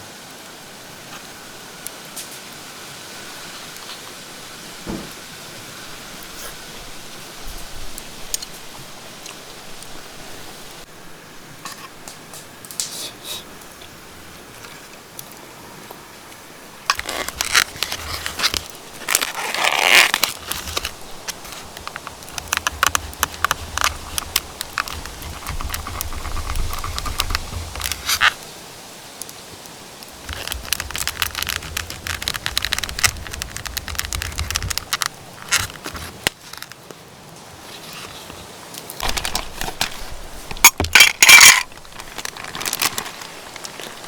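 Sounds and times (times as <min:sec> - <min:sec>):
crackling and rustling handling: 0:13.7 - 0:28.5, 0:30.0 - 0:44.0.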